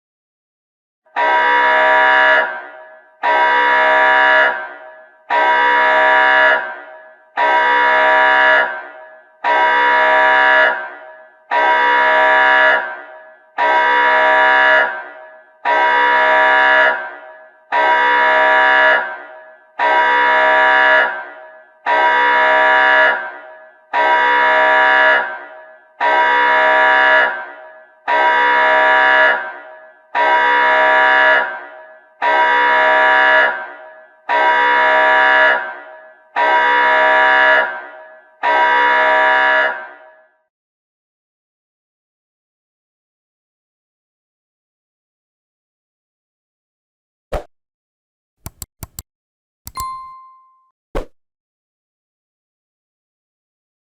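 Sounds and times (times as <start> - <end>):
loud alarm horn blasts: 1.1 - 40.3.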